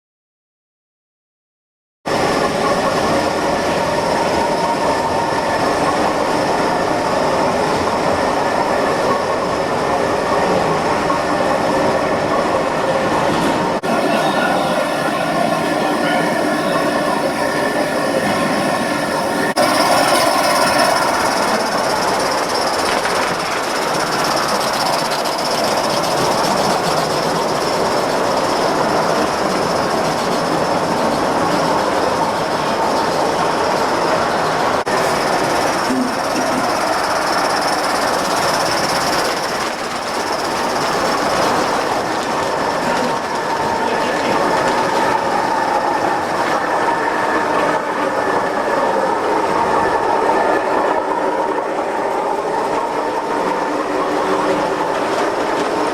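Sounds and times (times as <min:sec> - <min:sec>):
train wheels on rails: 0:02.1 - 0:55.9
high tones: 0:13.8 - 0:28.4.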